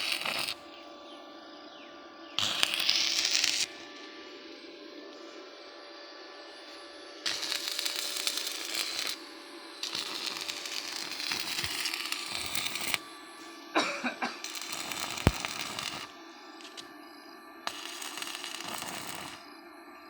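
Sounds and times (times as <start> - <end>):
welding arc crackling and sizzling: 0.0 - 0.7, 2.4 - 4.2, 6.5 - 16.9, 17.6 - 19.5
steady low hum: 0.0 - 20.0.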